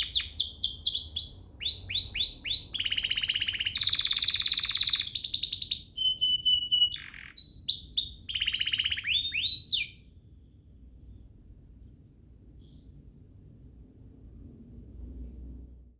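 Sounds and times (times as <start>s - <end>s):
canary singing: 0.0s - 10.1s.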